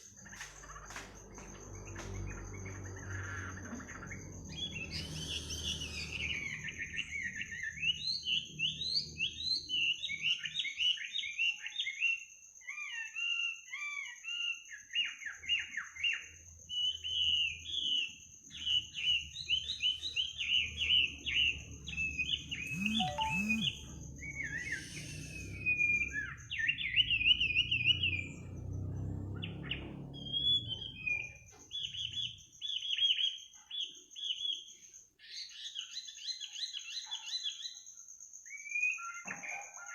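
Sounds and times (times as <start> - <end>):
songbird singing: 0.0 - 37.8
steady high-pitched tone: 22.7 - 24.0.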